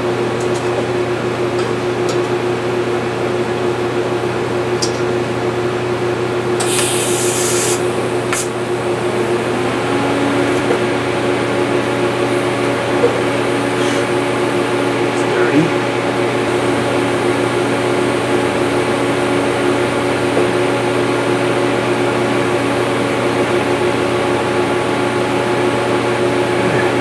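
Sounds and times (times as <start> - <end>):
steady machine hum: 0.0 - 27.0
hiss burst: 6.6 - 8.6.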